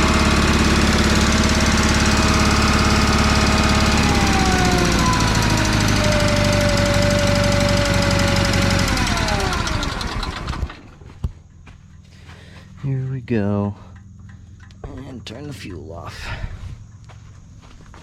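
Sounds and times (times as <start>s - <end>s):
small gasoline engine running: 0.0s - 11.1s.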